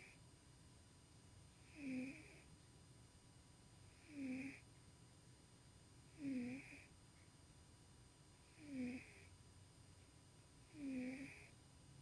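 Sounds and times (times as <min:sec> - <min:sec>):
cat snoring: 0:01.6 - 0:02.5, 0:03.9 - 0:04.6, 0:06.1 - 0:06.9, 0:08.5 - 0:09.3, 0:10.7 - 0:11.6.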